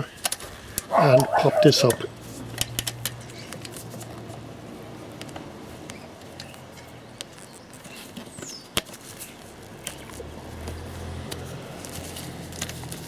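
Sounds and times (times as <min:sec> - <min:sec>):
bird chirp: 0:05.9 - 0:08.7.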